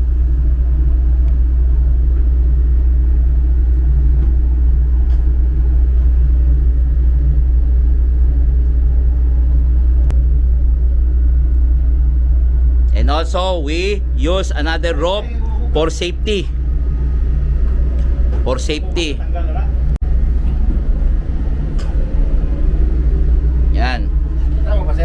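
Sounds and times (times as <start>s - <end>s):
ship engines droning: 0.0s - 25.0s.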